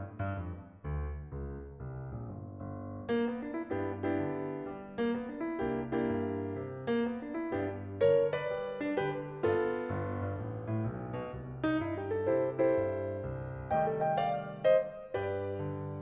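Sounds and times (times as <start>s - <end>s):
gentle piano music: 0.0s - 16.0s.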